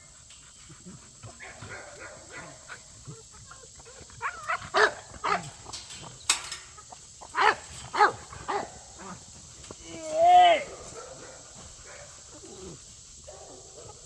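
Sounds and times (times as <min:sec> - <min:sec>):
dog barking: 0:01.4 - 0:02.8, 0:04.2 - 0:05.6, 0:07.4 - 0:09.2, 0:10.7 - 0:12.7, 0:13.3 - 0:14.0.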